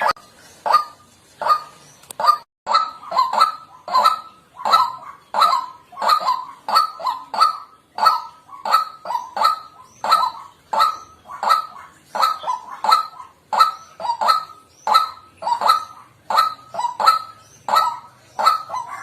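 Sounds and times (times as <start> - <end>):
waterhen harsh calls: 0.0 - 19.0.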